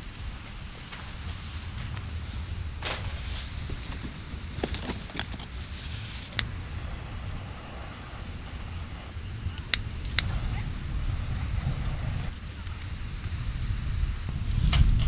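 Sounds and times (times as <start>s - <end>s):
wind rumble on microphone: 0.0s - 15.0s
sharp clicks: 9.5s - 10.4s.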